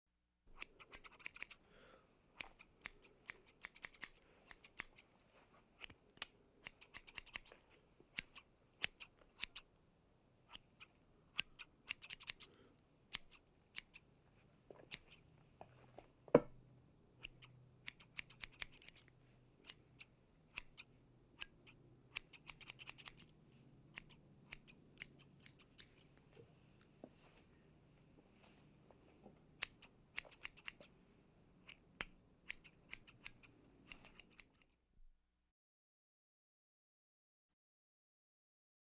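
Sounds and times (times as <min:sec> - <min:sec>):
scissors snipping hair: 0:00.5 - 0:01.6, 0:02.4 - 0:05.1, 0:05.8 - 0:09.7, 0:10.4 - 0:14.1, 0:14.8 - 0:15.2, 0:17.2 - 0:26.2, 0:29.6 - 0:30.9, 0:31.6 - 0:34.7.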